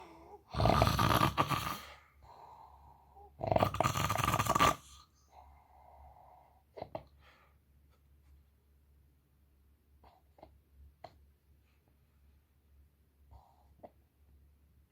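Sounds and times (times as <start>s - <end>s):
person snoring: 0.0s - 2.0s, 3.0s - 5.0s.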